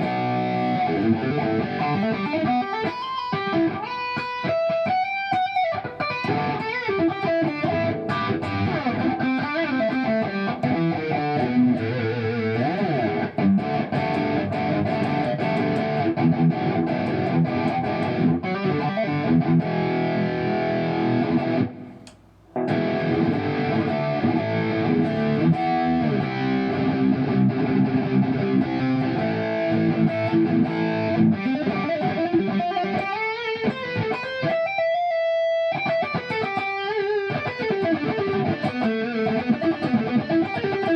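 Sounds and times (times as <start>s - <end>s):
electric guitar through an amp: 0.0s - 40.9s.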